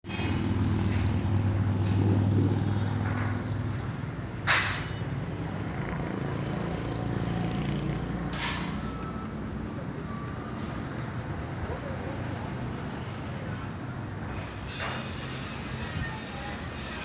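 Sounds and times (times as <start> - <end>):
hissing air burst: 14.3 - 17.0.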